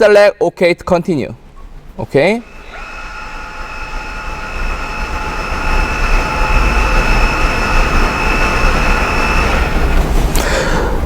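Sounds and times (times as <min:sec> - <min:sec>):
parking brake motors whining: 0:02.4 - 0:10.5.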